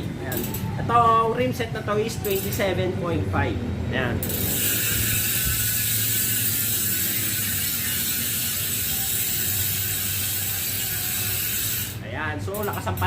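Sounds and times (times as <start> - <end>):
bicycle freehub ratcheting clicks: 0.0 - 0.8, 2.0 - 2.8, 4.2 - 13.0.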